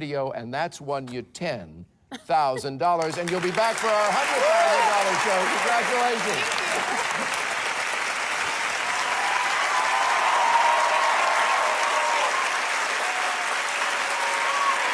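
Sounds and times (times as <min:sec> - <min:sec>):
audience applauding: 0:03.0 - 0:14.9.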